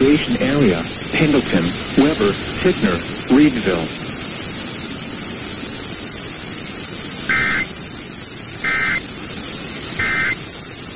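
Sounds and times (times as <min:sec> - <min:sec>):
radio static: 0:00.0 - 0:04.0, 0:07.2 - 0:07.7, 0:08.6 - 0:09.1, 0:09.8 - 0:10.6
two-tone digital data bursts: 0:07.3 - 0:07.7, 0:08.6 - 0:09.0, 0:10.0 - 0:10.4.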